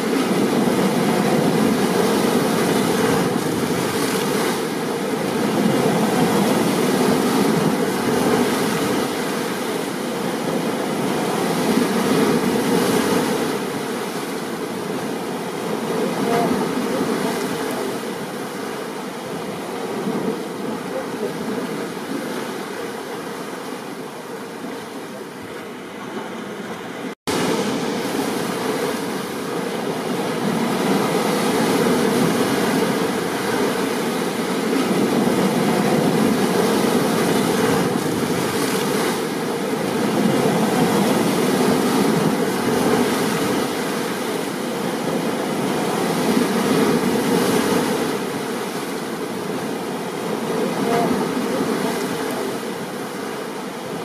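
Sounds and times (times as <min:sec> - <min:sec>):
ocean surf: 0:00.0 - 0:54.0
steady rain: 0:49.7 - 0:54.0.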